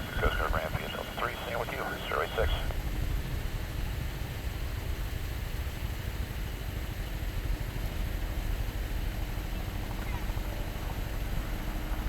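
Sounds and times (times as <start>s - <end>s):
helicopter rotors rumbling: 0.0s - 6.8s.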